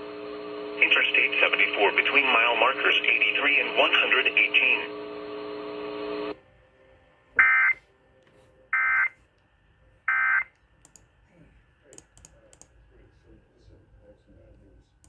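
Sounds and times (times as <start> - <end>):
faint clicks: 10.5 - 11.1, 11.9 - 12.8.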